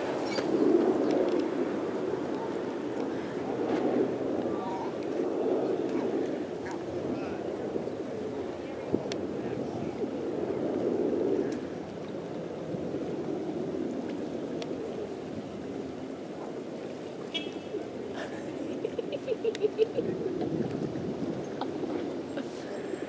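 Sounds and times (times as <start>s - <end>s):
surf: 0.0s - 23.0s
wind: 0.0s - 23.0s.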